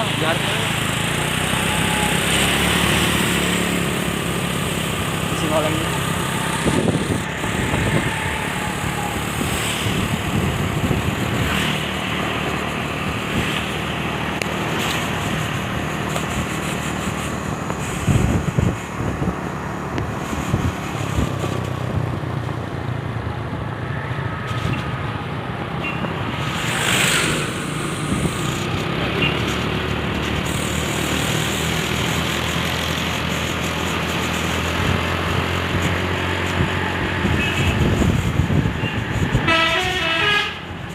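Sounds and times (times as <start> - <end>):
diesel truck engine running: 0.0 - 21.4
road and traffic noise: 0.0 - 40.9.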